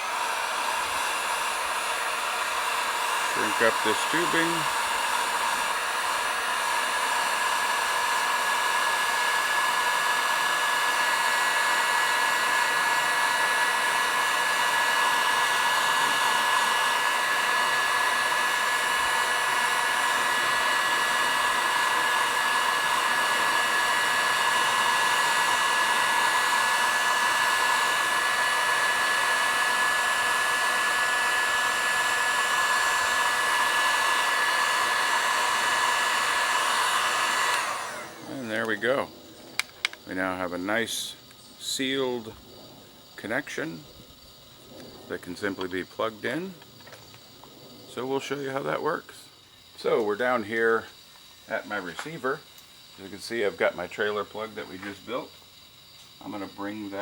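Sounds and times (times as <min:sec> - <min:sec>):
heat gun fan hiss and whine: 0:00.0 - 0:57.0.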